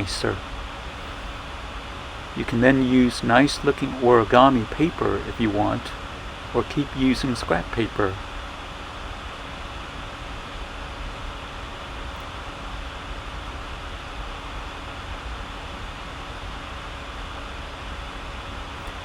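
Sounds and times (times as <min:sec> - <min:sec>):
faint low hum: 0:00.0 - 0:19.0
room hiss: 0:00.0 - 0:19.0.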